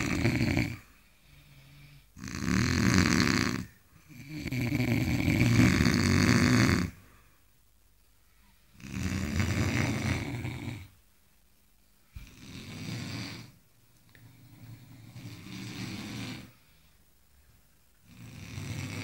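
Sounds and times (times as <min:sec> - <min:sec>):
man snoring: 0:00.0 - 0:00.9, 0:02.2 - 0:07.0, 0:08.8 - 0:10.9, 0:12.2 - 0:13.6, 0:14.5 - 0:16.5, 0:18.1 - 0:19.0.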